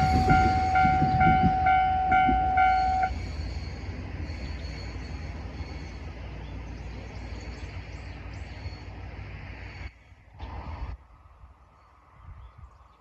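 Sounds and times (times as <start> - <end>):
train rumbling: 0.0 - 12.3.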